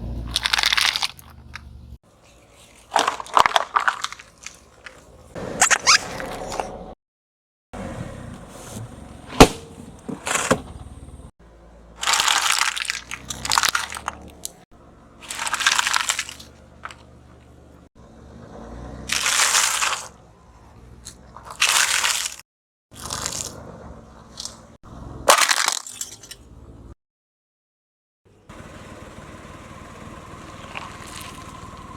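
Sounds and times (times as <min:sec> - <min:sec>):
objects crunching under car tyre: 0:00.0 - 0:07.0, 0:08.4 - 0:11.1, 0:12.0 - 0:14.6, 0:15.2 - 0:17.9, 0:19.0 - 0:26.4, 0:30.6 - 0:31.9.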